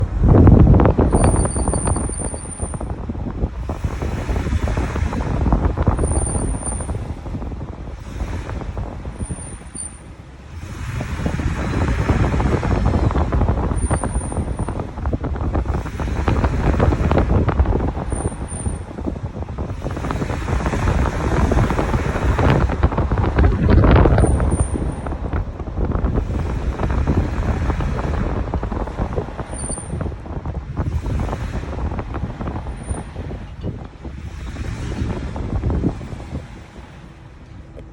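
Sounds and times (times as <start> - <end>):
truck engine rumbling: 0.0 - 37.9
wind on microphone: 0.0 - 37.9
high brake squeal: 1.1 - 2.9, 9.2 - 10.1, 29.5 - 30.0.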